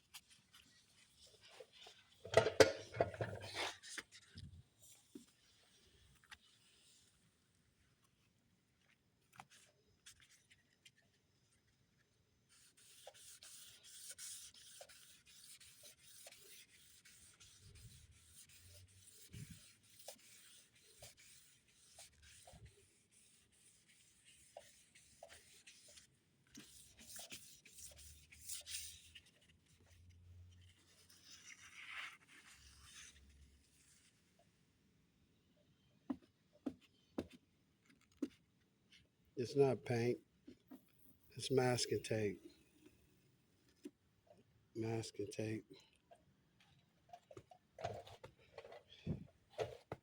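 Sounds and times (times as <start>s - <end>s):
sandpaper rubbing: 12.7s - 26.0s.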